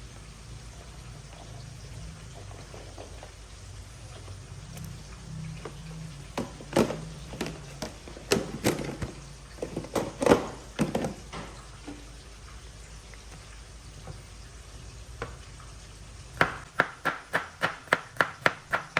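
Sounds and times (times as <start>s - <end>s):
utensils and pans knocking: 6.4s - 11.6s.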